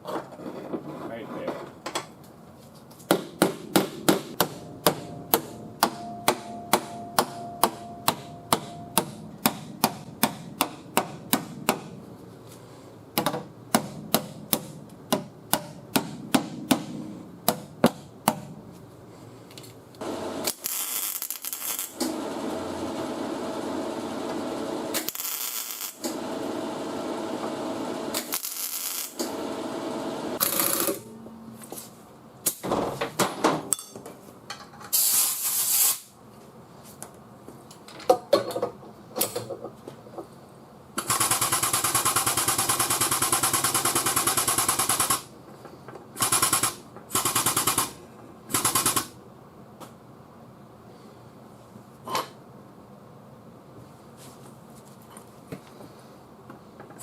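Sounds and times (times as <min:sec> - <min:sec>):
hammer striking sheet metal: 0:03.1 - 0:12.0
steady hissing noise: 0:34.3 - 0:37.8
sharp hissing bursts: 0:35.0 - 0:36.1.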